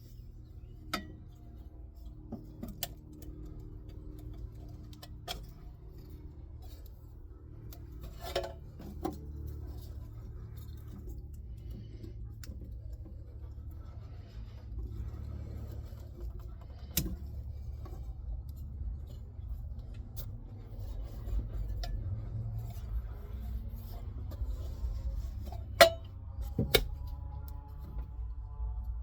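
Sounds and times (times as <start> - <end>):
steady low rumble: 0.0 - 29.0
sharp clicks and knocks of tools: 25.1 - 27.7.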